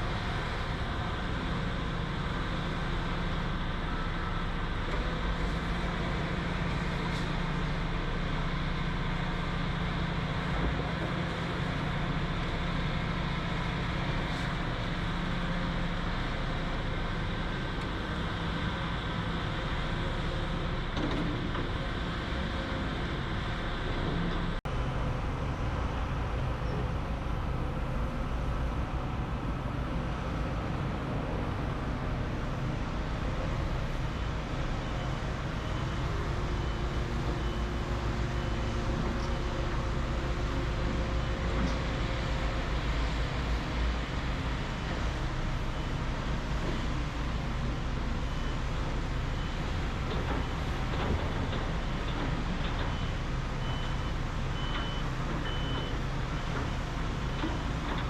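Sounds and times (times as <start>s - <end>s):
diesel machinery engine drone: 0.0s - 58.0s.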